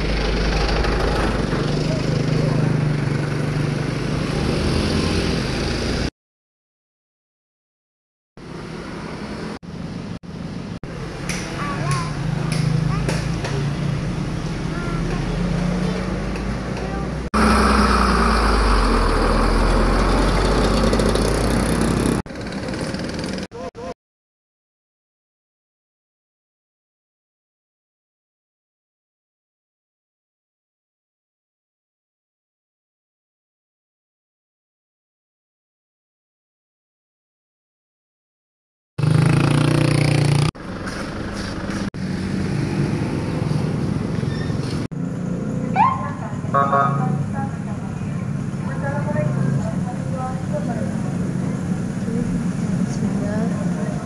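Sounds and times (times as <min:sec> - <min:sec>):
vehicle engine running: 0:00.0 - 0:04.4, 0:08.5 - 0:23.7, 0:39.0 - 0:54.0.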